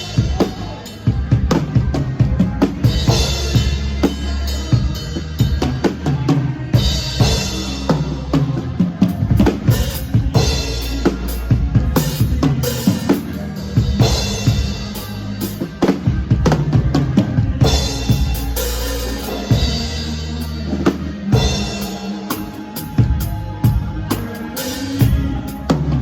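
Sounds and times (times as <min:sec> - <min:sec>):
bass line: 0:00.0 - 0:26.0
drum kit beat: 0:00.0 - 0:26.0.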